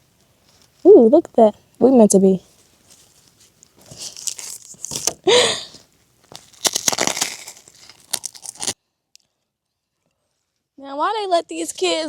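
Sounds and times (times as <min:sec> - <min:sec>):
close crinkling and crunching: 0:02.5 - 0:09.4.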